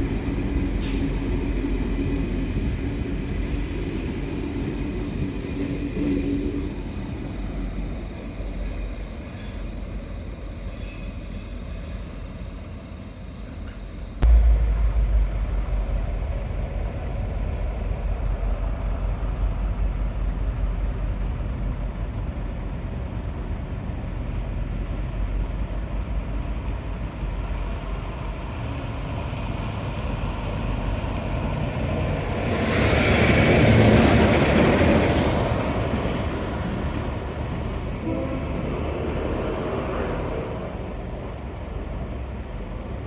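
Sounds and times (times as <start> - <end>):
heavy vehicle rumbling: 14.2 - 22.1.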